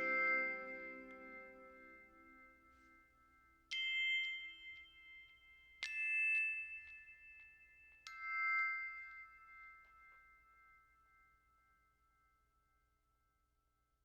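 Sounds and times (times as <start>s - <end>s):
high bell-like notes: 0.0s - 2.7s.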